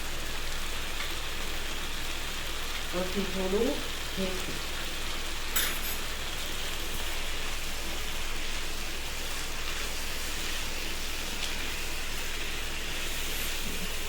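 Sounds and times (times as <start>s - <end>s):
vegetables frying in oil: 0.0s - 14.0s.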